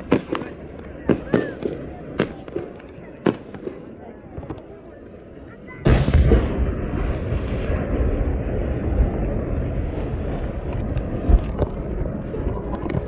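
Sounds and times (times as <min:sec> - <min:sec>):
firework boom rumbling: 0:05.8 - 0:13.0.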